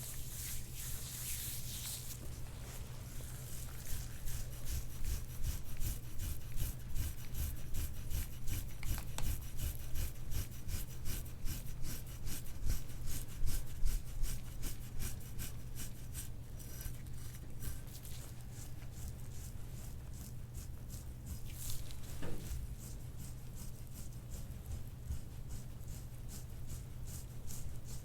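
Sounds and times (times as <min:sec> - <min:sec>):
tool scraping skin: 0:03.4 - 0:28.0.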